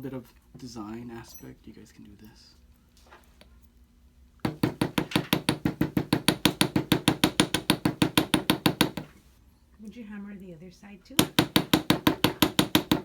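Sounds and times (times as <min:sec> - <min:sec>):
hammer striking metal wire: 0:04.5 - 0:09.2, 0:11.2 - 0:13.0.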